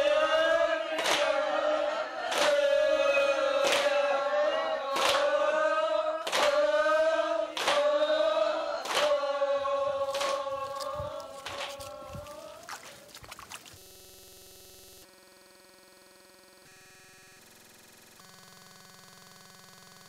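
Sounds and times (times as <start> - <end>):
voices chanting in unison: 0.0 - 13.1
rowing stroke accents: 9.0 - 14.4.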